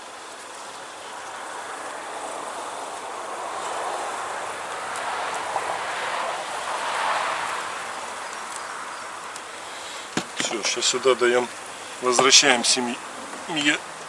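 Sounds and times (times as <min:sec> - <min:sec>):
honeybees buzzing: 0:08.9 - 0:14.0.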